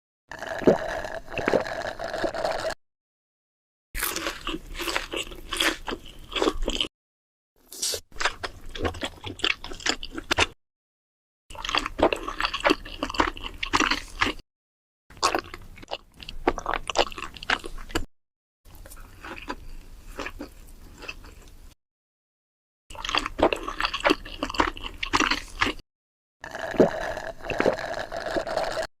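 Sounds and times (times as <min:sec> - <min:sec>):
wet crunchy chewing: 0:04.0 - 0:06.9, 0:07.6 - 0:10.6, 0:11.5 - 0:14.4, 0:15.1 - 0:18.1, 0:18.7 - 0:21.6, 0:22.9 - 0:25.8.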